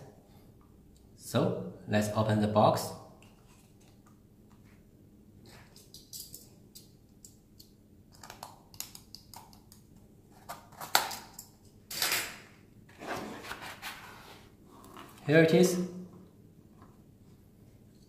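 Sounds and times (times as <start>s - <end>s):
packaging sliding and scraping: 12.9s - 15.2s.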